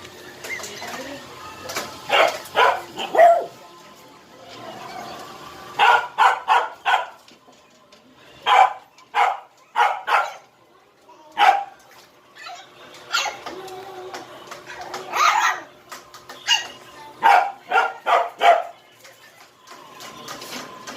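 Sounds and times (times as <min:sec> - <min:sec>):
dog barking: 0:02.1 - 0:03.6, 0:05.8 - 0:07.2, 0:08.4 - 0:10.5, 0:11.4 - 0:11.8, 0:15.1 - 0:15.7, 0:16.5 - 0:18.8.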